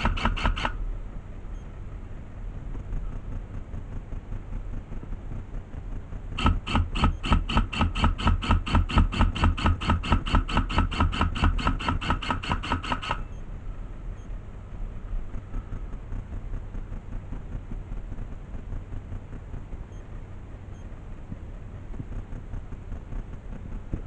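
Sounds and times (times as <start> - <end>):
airsoft gun firing: 0.0 - 0.8, 6.4 - 13.3
wind rumble on microphone: 14.8 - 24.0.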